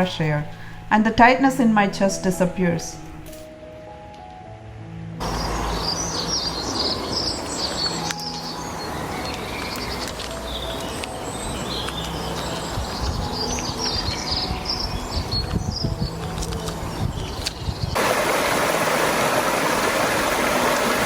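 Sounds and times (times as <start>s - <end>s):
small birds chirping and singing: 5.2s - 18.0s
steady outdoor rush: 5.2s - 21.0s.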